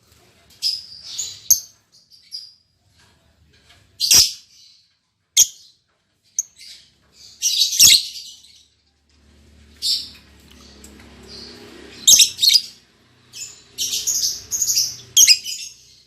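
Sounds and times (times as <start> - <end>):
lovebirds chirping: 4.0 - 8.8, 9.7 - 16.0
harsh bird chatter: 9.6 - 16.0.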